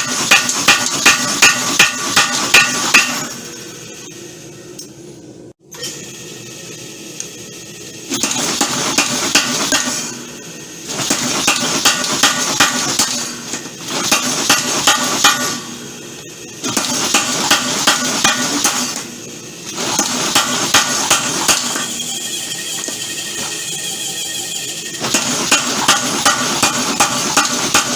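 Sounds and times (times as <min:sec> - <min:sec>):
power hammer striking hot steel: 0:00.0 - 0:03.5, 0:08.1 - 0:15.8, 0:16.6 - 0:22.0, 0:25.0 - 0:27.9.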